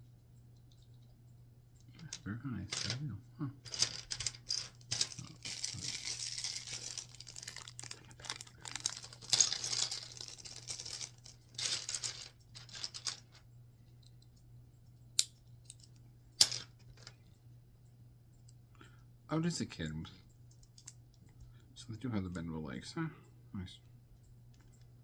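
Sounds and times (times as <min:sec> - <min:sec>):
plastic packaging crinkling: 0:05.0 - 0:10.9.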